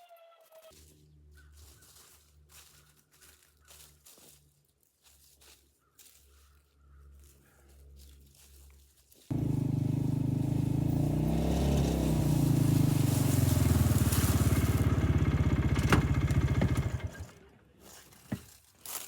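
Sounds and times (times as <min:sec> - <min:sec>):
engine running: 0:09.3 - 0:17.6.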